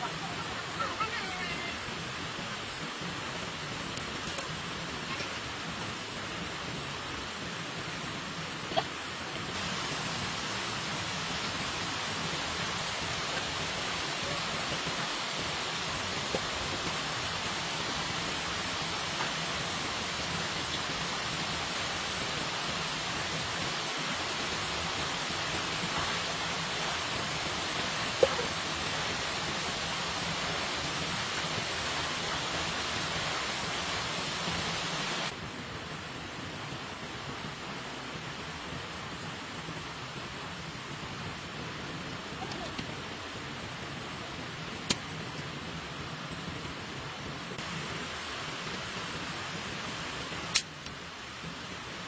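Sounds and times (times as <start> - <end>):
steady rain falling: 0.0 - 52.0
sharp click: 50.5 - 51.0.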